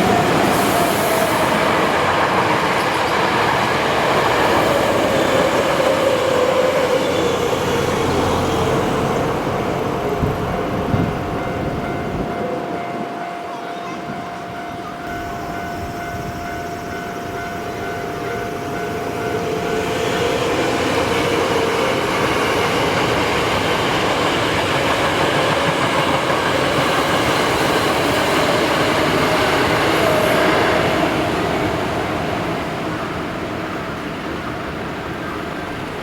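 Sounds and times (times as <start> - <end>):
train wheels rumbling on rails: 0.0 - 13.3, 14.0 - 36.0
crossing signal ringing: 6.6 - 24.7.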